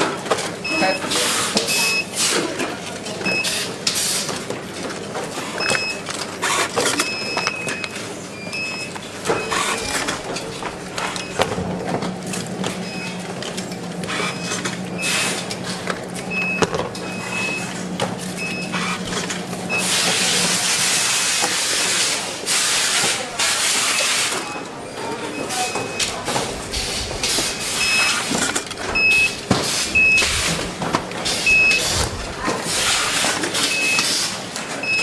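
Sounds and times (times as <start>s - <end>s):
machine hum: 24.7s - 33.8s.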